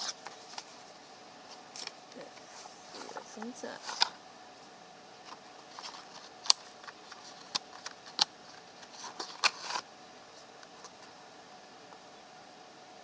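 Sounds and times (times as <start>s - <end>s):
cardboard rustling: 0.0s - 4.2s, 5.2s - 11.1s.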